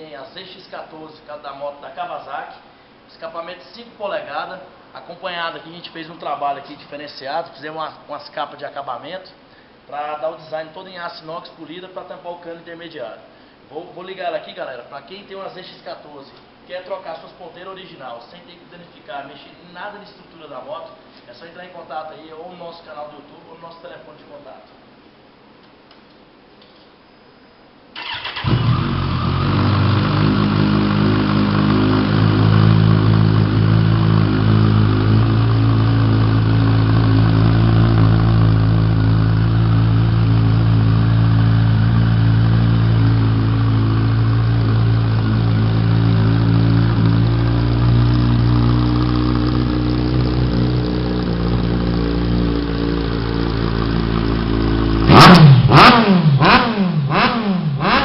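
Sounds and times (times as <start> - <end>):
engine revving blips: 28.0 - 35.6, 45.7 - 58.0
motorcycle engine idling: 28.0 - 57.2.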